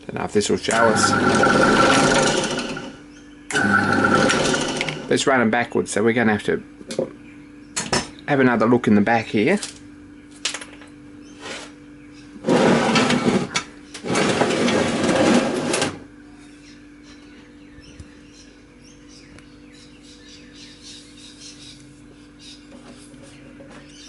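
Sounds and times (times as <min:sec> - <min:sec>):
steady low hum: 0:00.0 - 0:24.0
rough scraping noise: 0:00.8 - 0:03.0, 0:12.4 - 0:13.5, 0:14.1 - 0:15.8.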